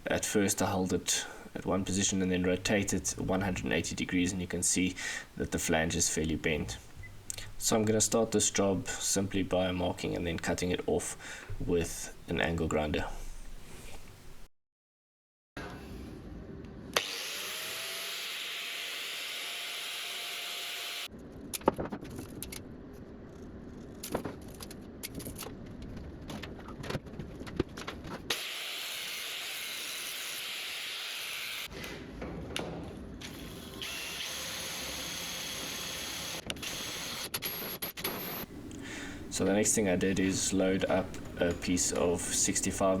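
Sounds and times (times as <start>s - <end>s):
angle grinder cutting steel: 17.0s - 21.1s, 28.3s - 31.7s.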